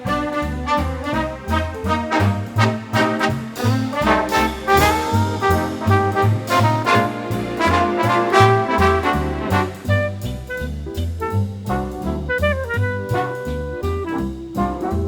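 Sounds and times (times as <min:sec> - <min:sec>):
stepping bass line: 0:00.0 - 0:15.0
swing jazz brass horns: 0:00.0 - 0:15.0.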